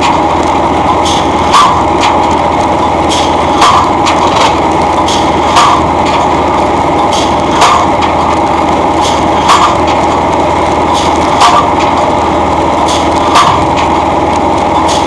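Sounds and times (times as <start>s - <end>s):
engine running: 0.0s - 15.0s
pile driver hammer strikes: 3.1s - 5.9s, 12.9s - 13.9s.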